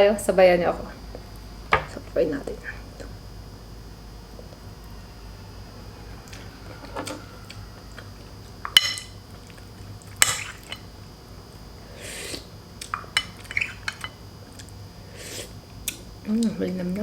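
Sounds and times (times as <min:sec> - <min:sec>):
cutlery clinking on dishes: 0:08.7 - 0:09.2.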